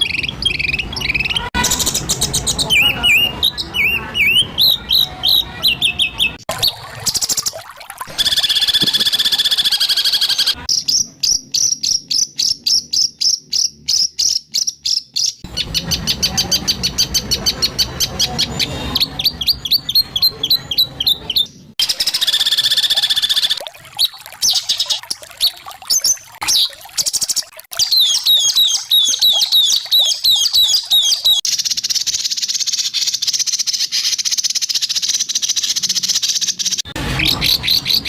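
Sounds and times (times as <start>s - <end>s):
high buzzy bird trill: 0.0s - 17.1s
songbird chirps and whistles: 8.1s - 35.7s.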